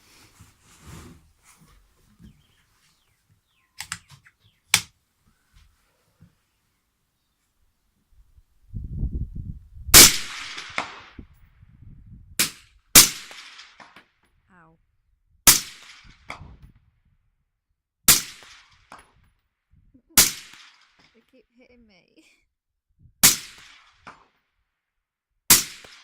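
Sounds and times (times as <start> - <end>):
suppressed rifle shots: 10.0 - 11.1, 20.2 - 21.0.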